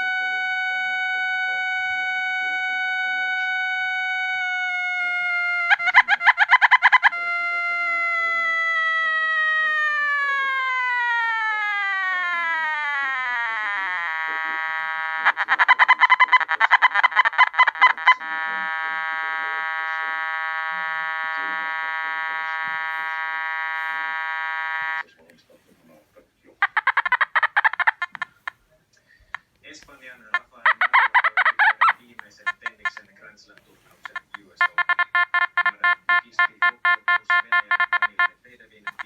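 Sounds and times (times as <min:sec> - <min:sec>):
metal detector buzzy tone: 0:00.0 - 0:25.1, 0:26.6 - 0:28.6, 0:29.9 - 0:39.0
metal detector rapid pulsing: 0:05.6 - 0:07.2, 0:11.6 - 0:25.0, 0:30.7 - 0:32.9, 0:34.0 - 0:38.3.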